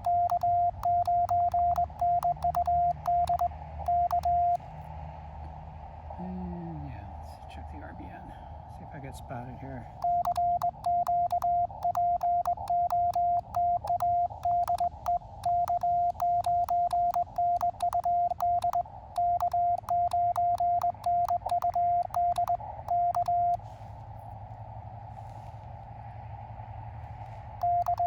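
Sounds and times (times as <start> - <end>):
key paddle clicks: 0.0 - 3.4, 10.0 - 23.6
morse code tone: 0.0 - 4.6, 10.0 - 23.6, 27.6 - 28.0
faint radio band noise: 0.0 - 28.0.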